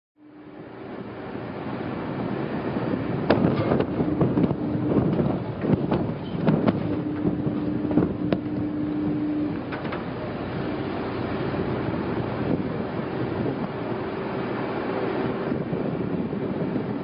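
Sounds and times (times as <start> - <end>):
steady low rumble: 0.2 - 17.0
underwater explosion cracks: 3.2 - 8.5.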